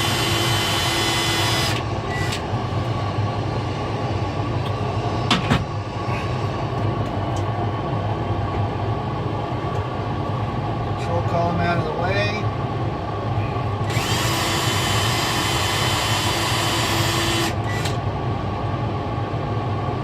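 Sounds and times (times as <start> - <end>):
cordless drill spinning: 0.0 - 1.8, 13.9 - 17.8
steady low hum: 0.0 - 20.0.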